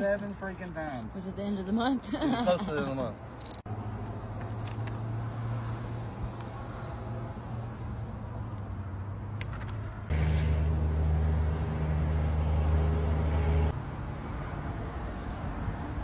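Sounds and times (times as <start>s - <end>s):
road traffic: 0.0s - 16.0s
vehicle engine drone: 3.7s - 16.0s.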